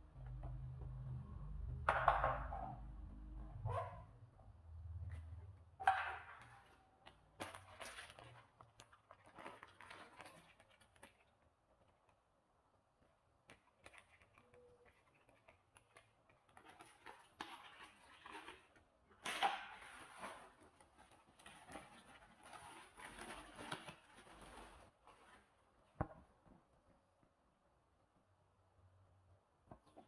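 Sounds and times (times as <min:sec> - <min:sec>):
rustling and crinkling: 0:06.3 - 0:27.2.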